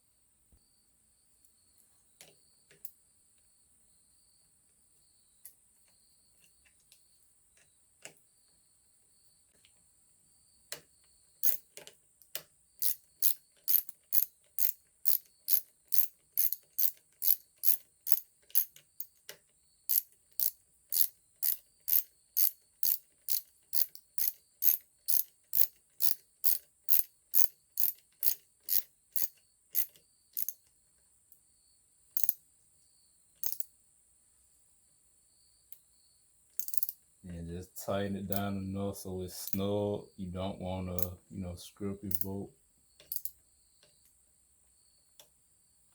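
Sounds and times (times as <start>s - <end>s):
ratchet wrench clicking: 11.4s - 19.2s, 19.9s - 30.6s, 32.2s - 32.4s, 33.4s - 33.7s, 36.6s - 37.0s, 43.1s - 43.3s.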